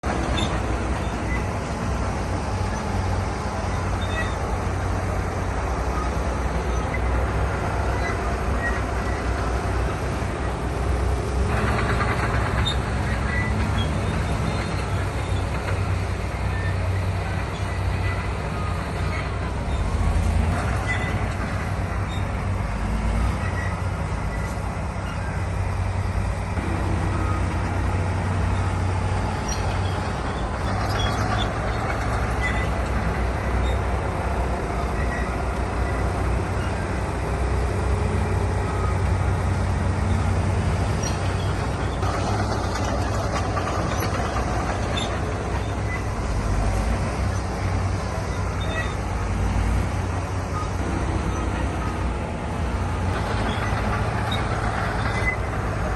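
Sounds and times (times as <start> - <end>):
heavy diesel engine rumble: 0.0 - 55.9.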